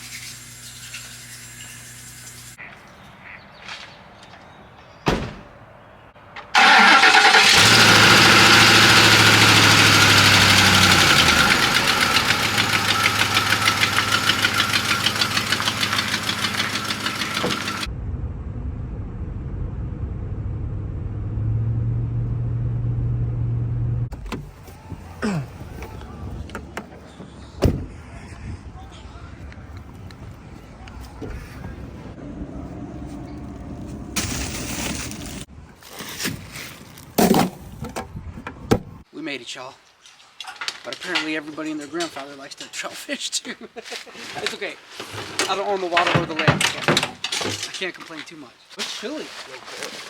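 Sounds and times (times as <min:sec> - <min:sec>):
car engine starting and idling: 0:06.6 - 0:24.6.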